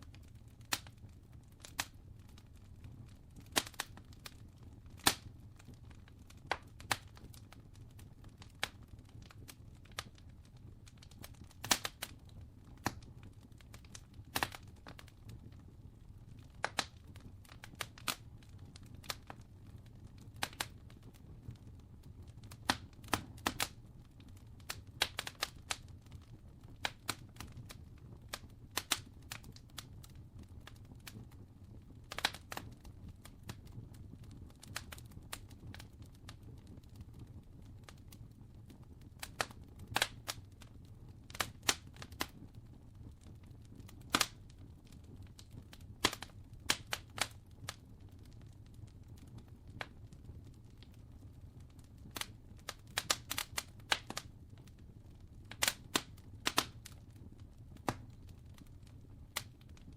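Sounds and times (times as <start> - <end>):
wood fire crackling: 0.0 - 59.9.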